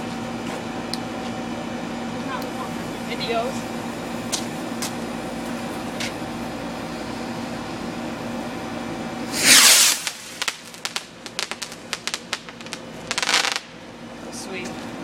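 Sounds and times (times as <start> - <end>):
firework whoosh: 9.2 - 13.7
firework hissing: 9.2 - 13.8
crackling pops: 9.3 - 13.7.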